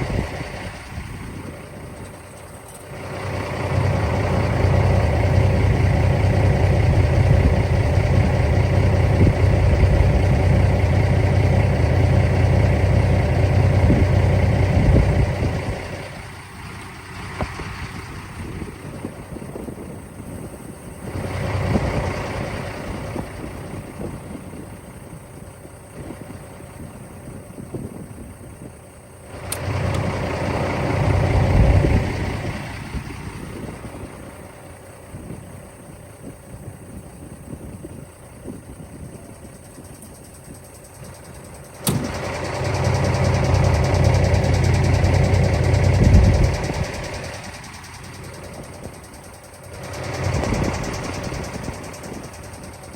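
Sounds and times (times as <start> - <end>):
diesel truck engine idling: 0.0 - 52.9
sharp click: 41.7 - 42.2.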